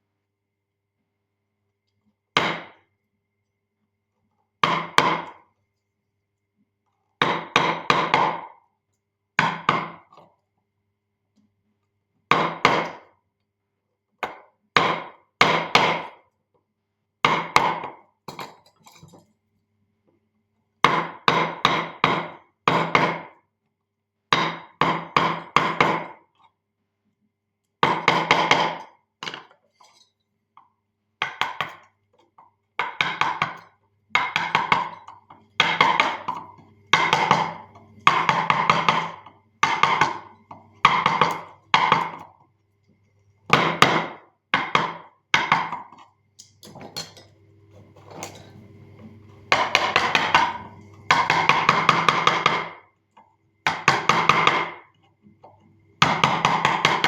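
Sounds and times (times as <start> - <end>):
mallet striking chisel into wood: 2.4 - 2.8, 4.6 - 5.3, 7.2 - 8.5, 12.3 - 13.0, 14.3 - 16.1, 32.8 - 33.6, 34.2 - 35.0, 36.9 - 37.5, 38.1 - 40.2, 40.9 - 42.2, 43.5 - 45.9, 49.5 - 52.8, 56.0 - 57.0.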